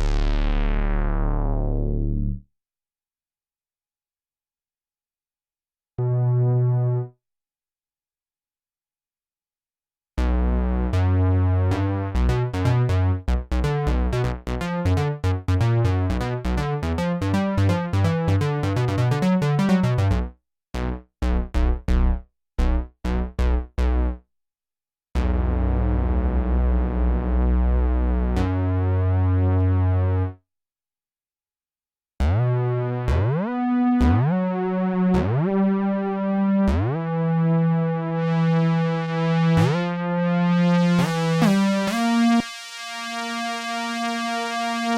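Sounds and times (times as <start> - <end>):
analog synthesizer chords: 0.0 - 2.4, 10.2 - 24.1, 32.2 - 44.9.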